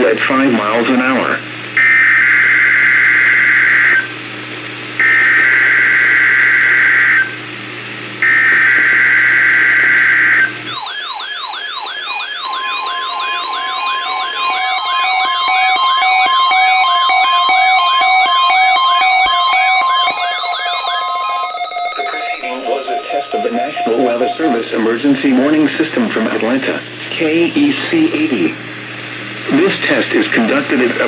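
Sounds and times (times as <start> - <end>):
electronic siren-like warble: 8.2 - 25.0
electronic tones: 8.2 - 25.0
harsh digital data tones: 8.2 - 25.9.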